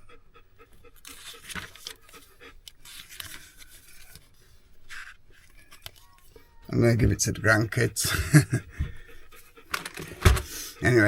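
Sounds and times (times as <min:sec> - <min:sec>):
handling rustling and ticks: 0:00.8 - 0:07.9.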